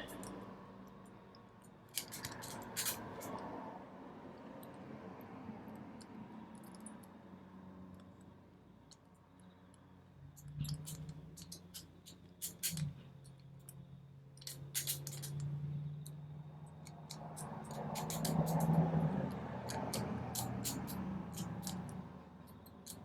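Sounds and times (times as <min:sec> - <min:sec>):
padlock wheels clicking: 0:00.0 - 0:03.5, 0:08.9 - 0:23.0.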